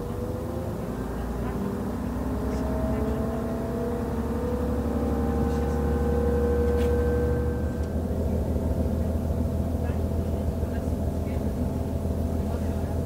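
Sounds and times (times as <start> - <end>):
train engine rumbling: 0.0 - 13.0
rising whining tones: 1.9 - 8.0.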